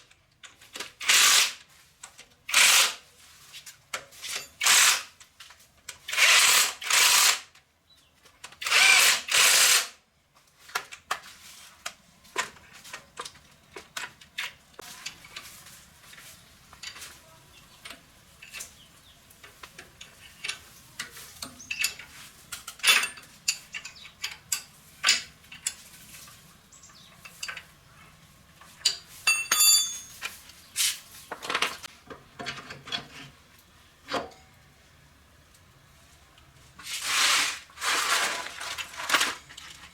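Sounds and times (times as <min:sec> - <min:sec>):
tools and metal parts clinking: 0:03.9 - 0:04.8, 0:16.2 - 0:18.8, 0:19.4 - 0:30.6.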